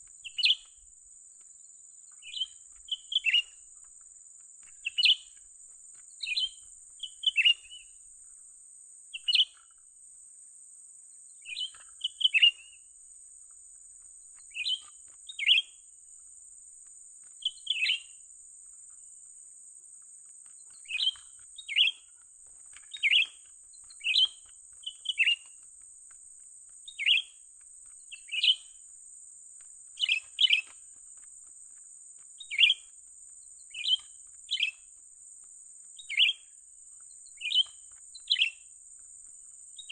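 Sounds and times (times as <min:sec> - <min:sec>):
bird chirping: 0:00.0 - 0:00.9, 0:02.0 - 0:08.4, 0:09.1 - 0:09.9, 0:11.3 - 0:19.3, 0:20.0 - 0:28.9, 0:29.9 - 0:31.8, 0:32.4 - 0:35.0, 0:35.9 - 0:39.9.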